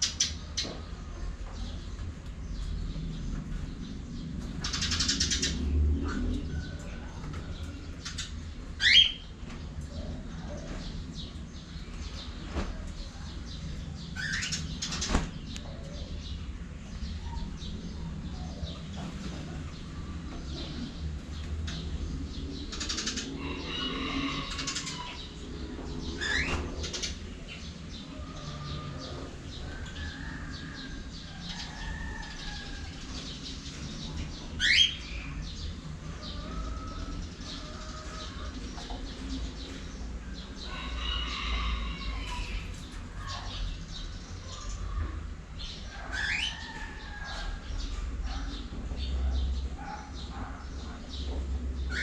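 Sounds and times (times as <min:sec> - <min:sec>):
cockatiels chirping: 0:46.0 - 0:46.8.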